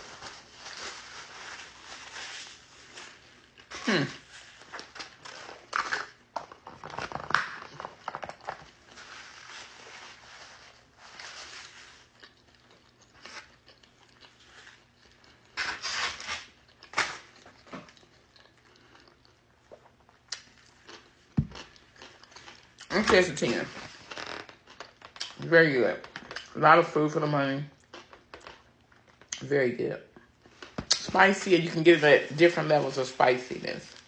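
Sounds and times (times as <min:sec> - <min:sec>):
person chewing crunchy chicken: 0:10.9 - 0:22.9, 0:23.9 - 0:25.4, 0:27.7 - 0:29.4.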